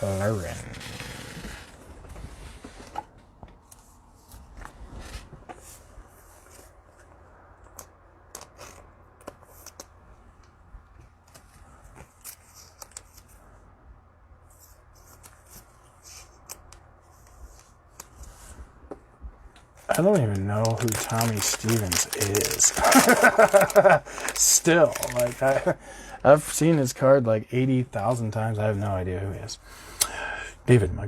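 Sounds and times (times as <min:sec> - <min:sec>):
plastic wrapper crinkle: 0:19.9 - 0:25.8.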